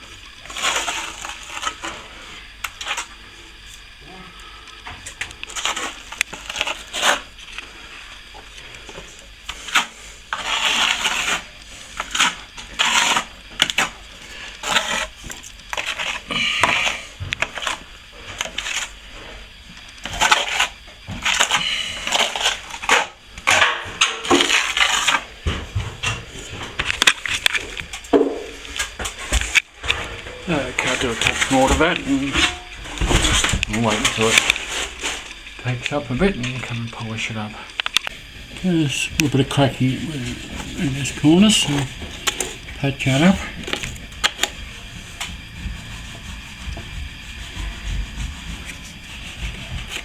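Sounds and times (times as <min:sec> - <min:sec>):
trowel scraping wet plaster: 0:10.4 - 0:13.3, 0:14.6 - 0:15.2, 0:38.1 - 0:50.0.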